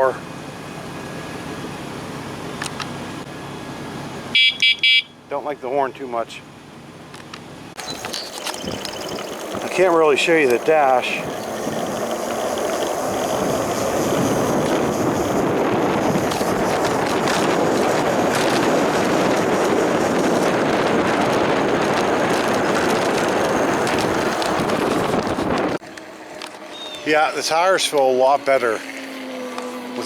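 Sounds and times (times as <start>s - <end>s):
tyres humming on road: 0.0s - 30.0s
wind over microphone: 7.8s - 25.8s.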